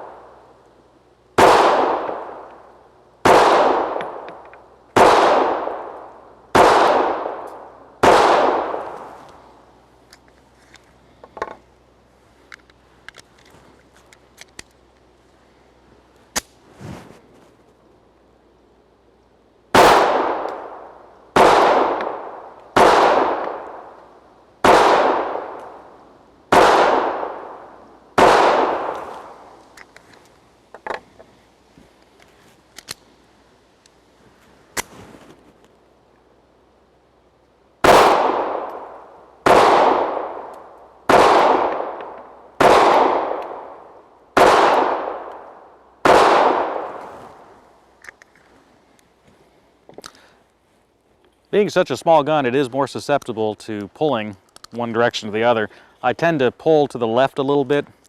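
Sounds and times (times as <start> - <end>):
pistol shots with ringing echo: 0.0 - 0.5, 1.4 - 4.4, 5.0 - 9.1, 19.7 - 24.0, 24.6 - 29.6, 37.8 - 47.0.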